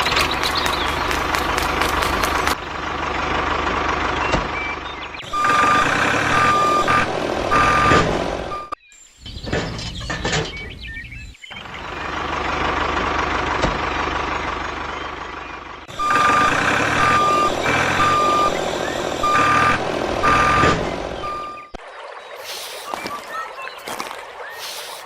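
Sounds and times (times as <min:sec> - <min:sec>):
engine running: 0:00.0 - 0:08.8, 0:11.5 - 0:21.8
reversing alarm beeping: 0:05.2 - 0:08.8, 0:15.9 - 0:21.8.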